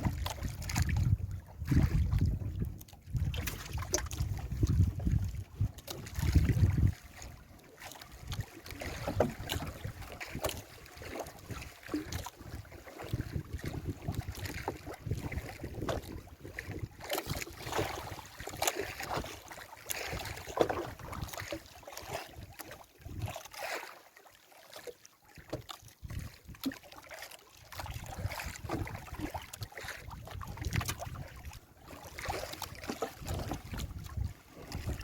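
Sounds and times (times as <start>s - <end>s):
wind buffeting microphone: 0.0s - 7.1s, 11.4s - 19.3s, 30.0s - 31.4s, 33.2s - 35.0s
water sloshing around boat: 0.0s - 35.0s
knocks on boat: 9.1s - 9.6s.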